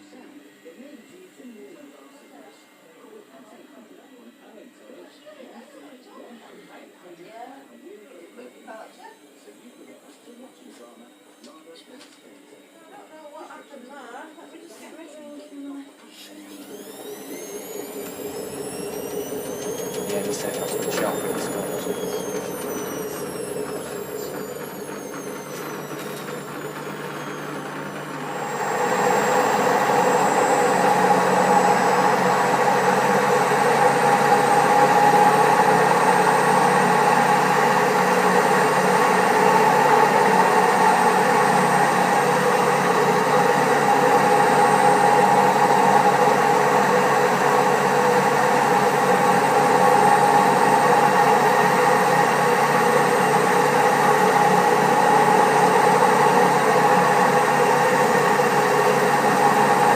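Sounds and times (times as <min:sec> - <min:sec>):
washing machine spinning: 0:16.5 - 0:59.9.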